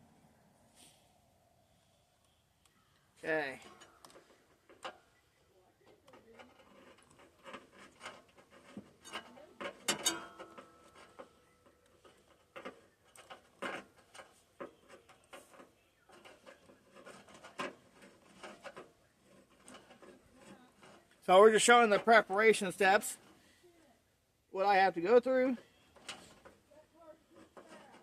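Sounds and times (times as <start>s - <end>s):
tools clicking and tapping on metal: 5.8s - 21.1s.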